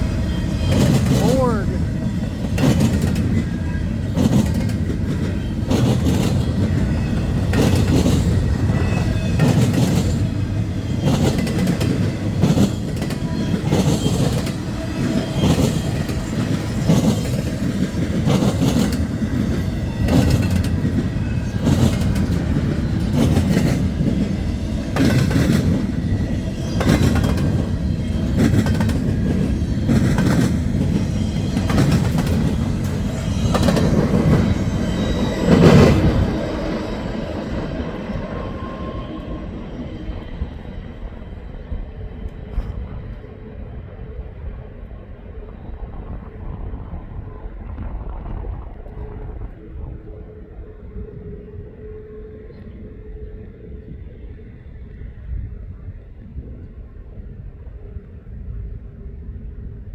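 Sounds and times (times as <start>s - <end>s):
train wheels clacking: 0.0s - 43.4s
freight train rumbling past: 0.0s - 59.9s.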